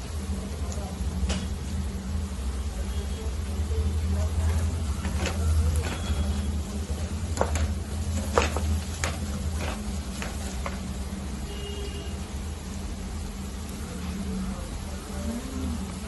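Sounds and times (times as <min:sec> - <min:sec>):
faint sizzle: 0:00.0 - 0:16.0
spatula stirring and scraping pan: 0:04.2 - 0:11.2
spatula clacking against pan: 0:04.6 - 0:11.0.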